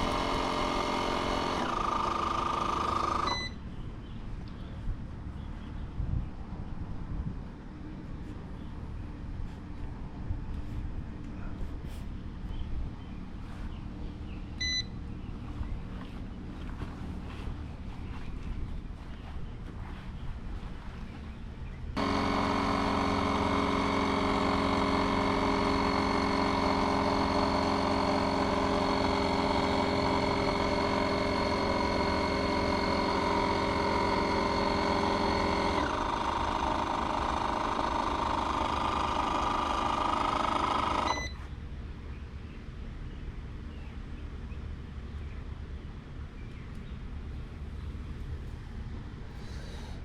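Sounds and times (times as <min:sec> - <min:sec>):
motor running steadily: 0:00.0 - 0:05.9, 0:10.5 - 0:41.8.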